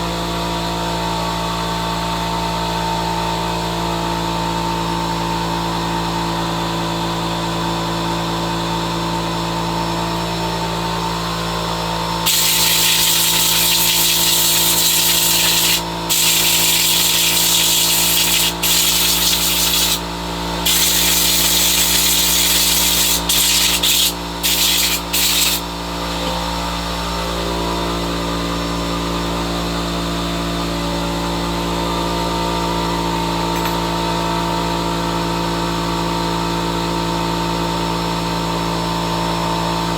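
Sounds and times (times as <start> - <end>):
air compressor running: 0.0 - 39.9
blow gun air hiss: 12.3 - 20.0, 20.7 - 25.6.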